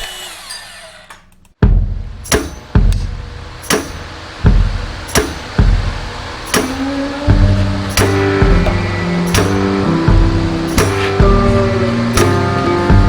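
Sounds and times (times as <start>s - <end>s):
music with drum beat: 1.6s - 13.0s.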